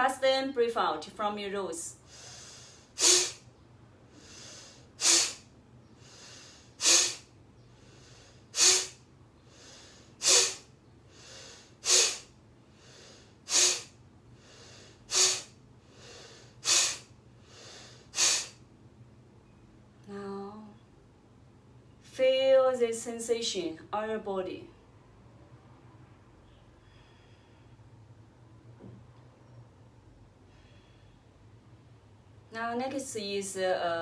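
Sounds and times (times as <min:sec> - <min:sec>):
forceful breaths through the nose: 0:02.0 - 0:03.5, 0:04.1 - 0:18.6.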